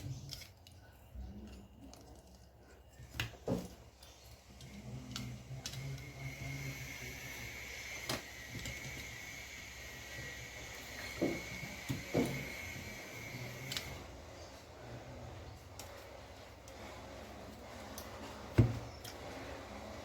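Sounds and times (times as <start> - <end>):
faint high whine: 4.6 - 16.0.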